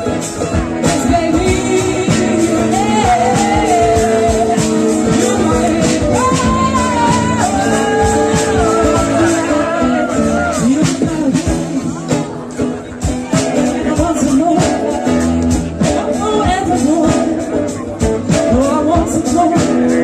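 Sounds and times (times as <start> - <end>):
strummed acoustic guitar: 0.0 - 20.0
woman singing slow song: 0.5 - 11.9, 16.1 - 17.6.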